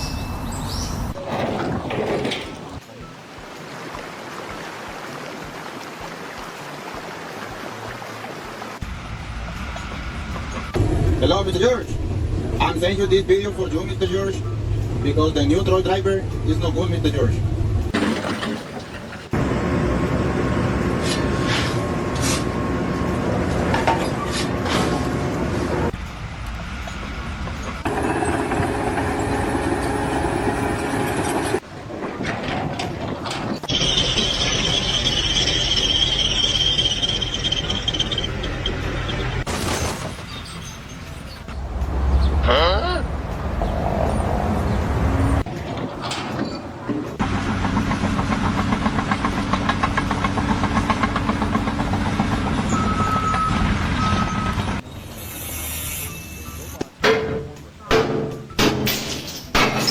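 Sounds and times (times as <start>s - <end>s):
heavy machinery engine rumble: 8.8s - 55.1s.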